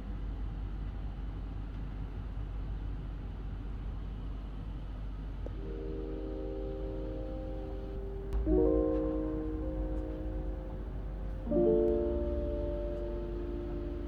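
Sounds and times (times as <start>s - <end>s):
low hum and hiss: 0.0s - 14.0s
held keyboard notes: 5.5s - 14.0s.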